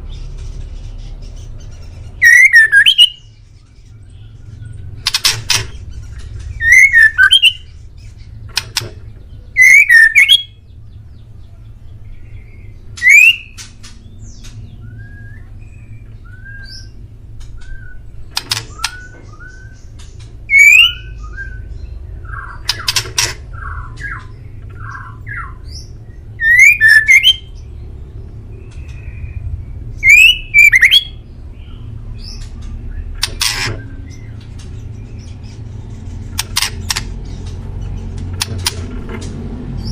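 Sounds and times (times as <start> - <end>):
bird harsh calls: 0.0 - 17.0, 17.6 - 27.8, 28.6 - 38.8
soft whistled bird notes: 2.2 - 3.2, 9.6 - 10.6, 20.5 - 21.7, 30.0 - 31.2.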